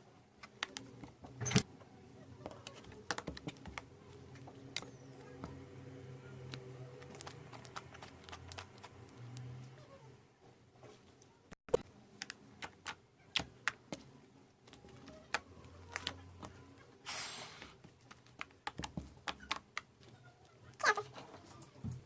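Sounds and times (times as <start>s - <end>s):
airy slime squish: 6.4s - 9.7s.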